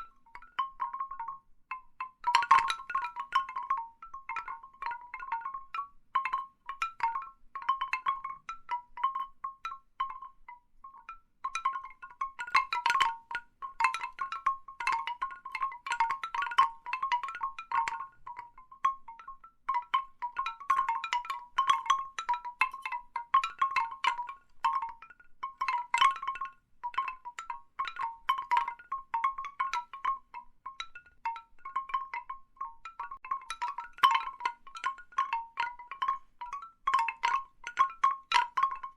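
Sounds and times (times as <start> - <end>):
bamboo wind chimes knocking: 0.0 - 38.9.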